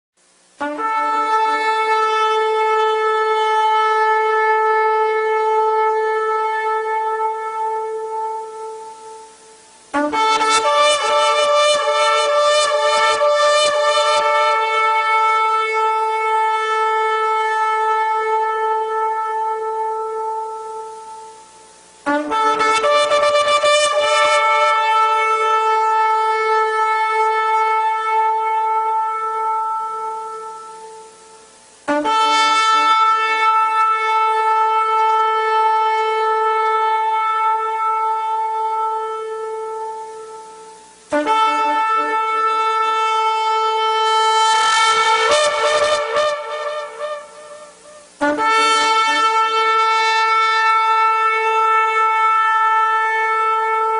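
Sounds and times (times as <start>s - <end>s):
shofar blasts: 0.5s - 53.9s.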